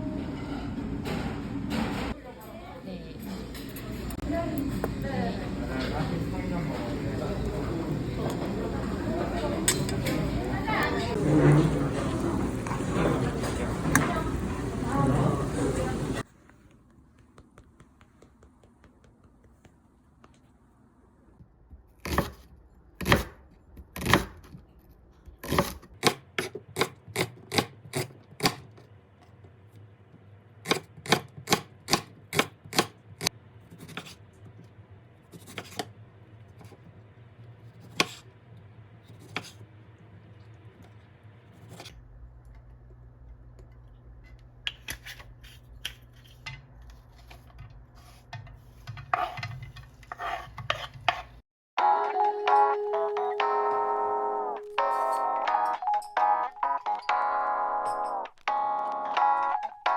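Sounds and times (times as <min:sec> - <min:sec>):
knife chopping on cutting board: 0:22.0 - 0:23.4, 0:24.0 - 0:24.5, 0:25.4 - 0:28.6, 0:30.6 - 0:33.0, 0:33.8 - 0:34.2, 0:37.8 - 0:38.2, 0:48.0 - 0:51.3.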